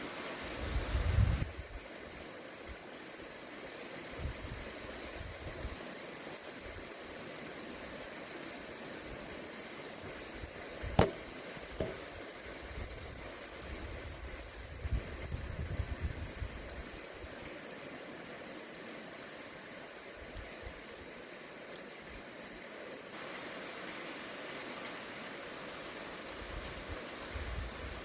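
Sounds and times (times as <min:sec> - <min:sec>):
light rain hissing: 0:00.0 - 0:28.0
sharp tap: 0:11.0 - 0:12.0.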